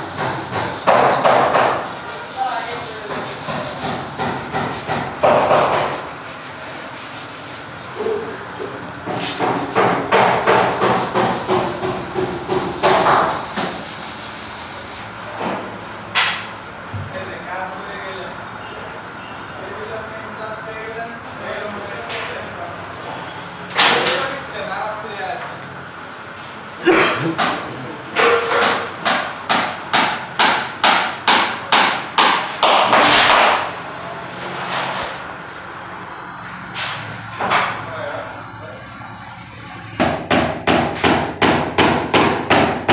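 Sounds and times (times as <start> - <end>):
hammer striking: 27.2 - 33.6.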